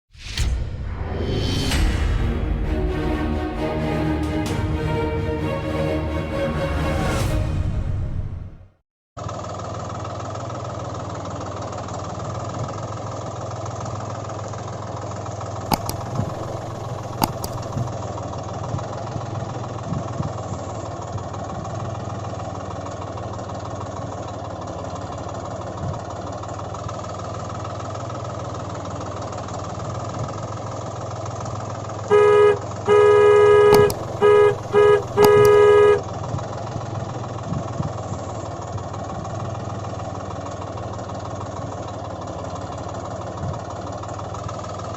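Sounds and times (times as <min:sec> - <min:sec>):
tractor engine running: 0:09.2 - 0:44.9
vehicle horn honking: 0:32.1 - 0:36.1.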